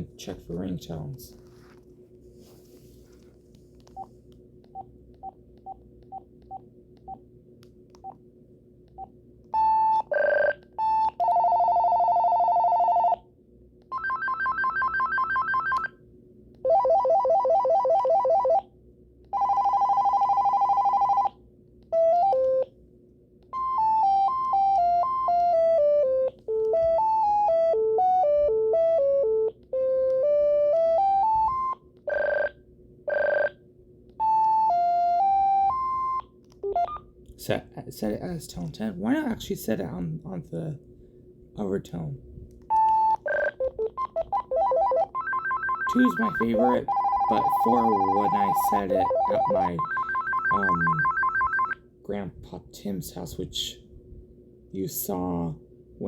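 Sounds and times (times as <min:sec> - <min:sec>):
electronic ringtone melody: 0:13.9 - 0:15.8, 0:23.5 - 0:33.5, 0:34.2 - 0:37.0, 0:42.7 - 0:51.8
keypress beeps: 0:42.7 - 0:45.0.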